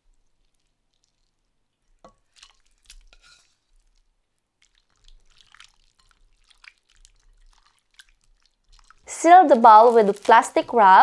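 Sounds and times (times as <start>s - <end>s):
wet drips and splashes: 2.2s - 3.0s, 4.5s - 11.0s.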